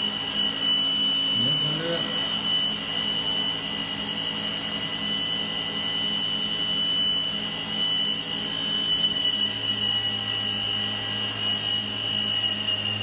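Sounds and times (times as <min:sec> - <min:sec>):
circular saw motor whining: 0:00.0 - 0:13.0.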